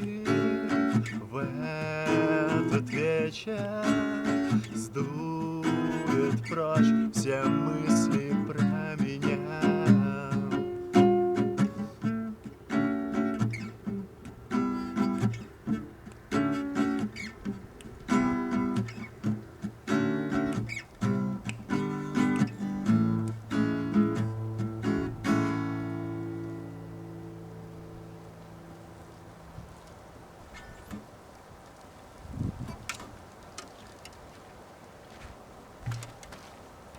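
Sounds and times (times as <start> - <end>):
strummed acoustic guitar chords: 0.0 - 29.4.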